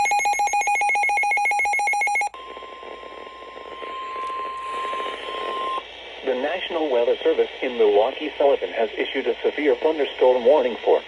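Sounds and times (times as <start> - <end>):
steady alarm tone: 0.0 - 5.8
radio hiss: 2.4 - 11.0.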